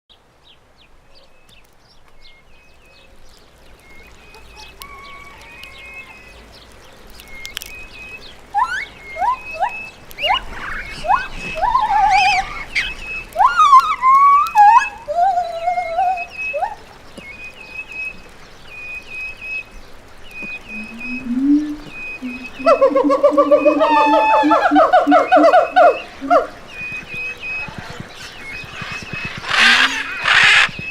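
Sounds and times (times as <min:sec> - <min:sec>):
wavering upward sweeping calls: 0:08.0 - 0:16.9, 0:20.3 - 0:30.9.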